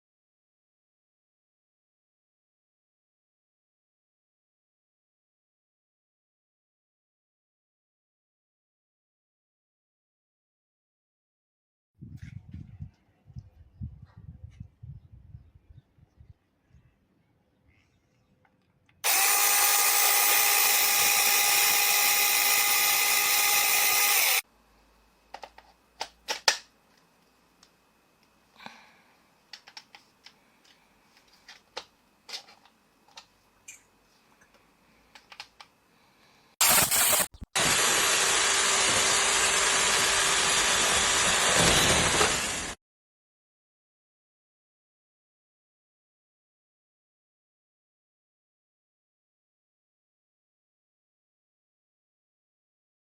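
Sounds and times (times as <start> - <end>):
electric chainsaw running: 19.0 - 24.4, 36.6 - 42.8.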